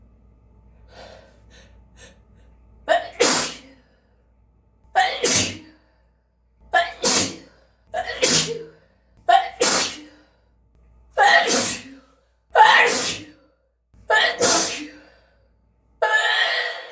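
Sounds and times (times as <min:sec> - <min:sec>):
person sneezing: 0:02.9 - 0:03.7, 0:05.0 - 0:05.7, 0:06.8 - 0:08.7, 0:09.3 - 0:10.1, 0:11.2 - 0:12.0, 0:12.6 - 0:13.4, 0:14.2 - 0:15.0.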